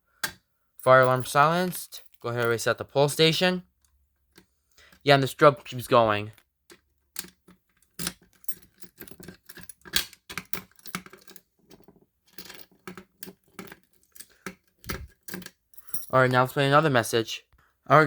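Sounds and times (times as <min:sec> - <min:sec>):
clicks and rattles: 0:06.3 - 0:16.0
keys jangling: 0:07.2 - 0:16.2.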